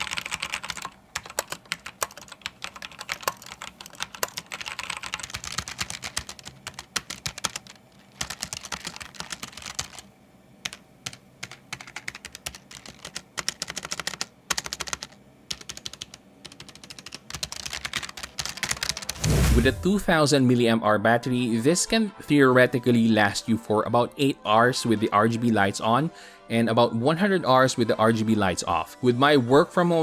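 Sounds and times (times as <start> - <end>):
mechanical keyboard typing: 0.0 - 19.2.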